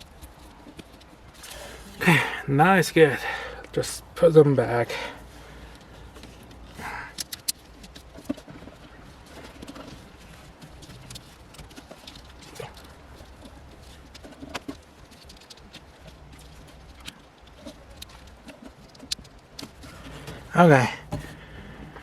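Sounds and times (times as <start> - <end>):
faint steady hum: 0.0 - 22.0
plastic parts clicking: 5.7 - 22.0.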